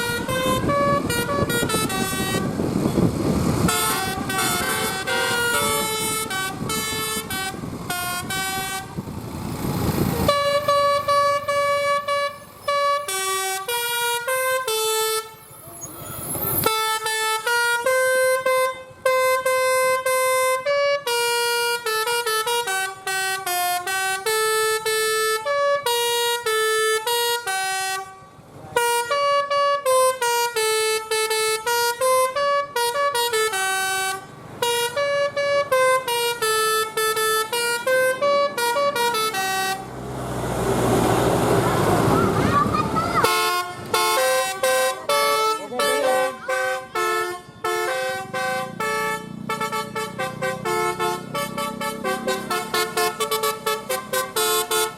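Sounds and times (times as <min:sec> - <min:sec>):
musical bus horn melody: 0:00.0 - 0:09.1, 0:10.2 - 0:15.7, 0:16.7 - 0:40.0, 0:43.2 - 0:54.9
rushing noise: 0:00.9 - 0:11.7, 0:39.7 - 0:43.6.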